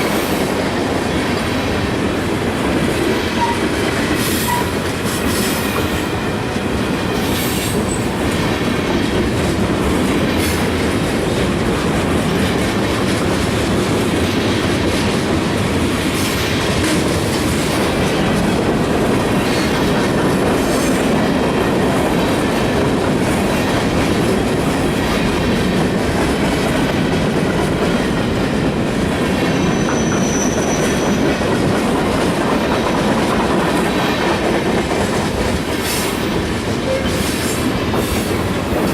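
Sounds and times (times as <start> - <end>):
freight train rolling past: 0.0 - 38.9
thin high wheel squeal: 29.6 - 31.2.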